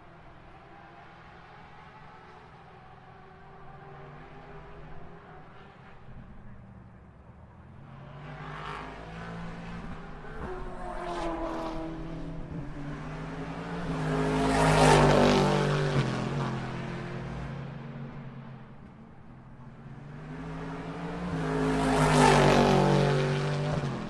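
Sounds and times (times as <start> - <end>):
race car passing at speed: 7.8 - 24.0.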